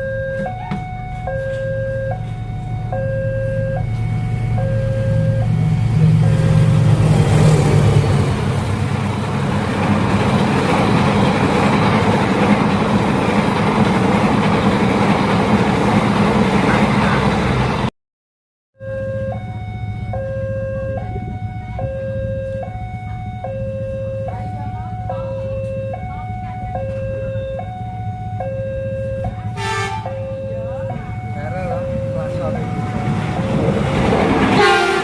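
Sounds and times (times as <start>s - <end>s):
level-crossing alarm two tones: 0.0s - 8.3s, 18.8s - 35.0s
diesel locomotive engine drone: 0.0s - 17.9s, 18.8s - 35.0s
train wheels rumbling on rail: 0.3s - 17.9s, 20.9s - 35.0s.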